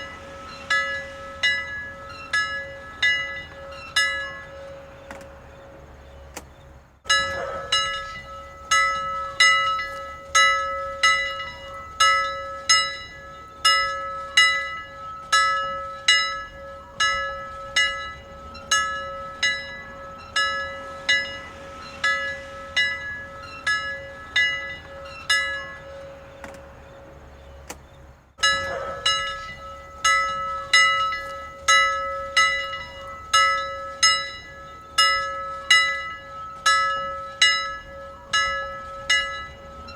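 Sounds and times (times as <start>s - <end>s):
bell ringing in steady rhythm: 0.0s - 5.0s, 7.1s - 26.4s, 28.4s - 39.9s.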